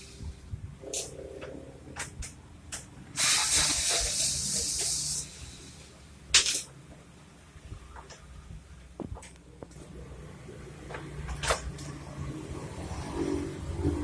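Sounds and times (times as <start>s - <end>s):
spray hissing: 3.2s - 5.9s.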